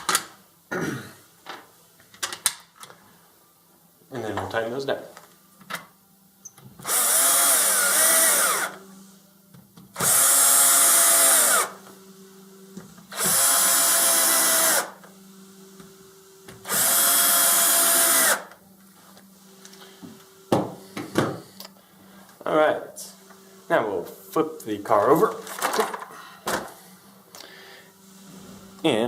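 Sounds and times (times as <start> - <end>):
drill motor whine: 6.8 - 8.8, 10.0 - 11.9, 13.1 - 15.1, 16.6 - 18.6.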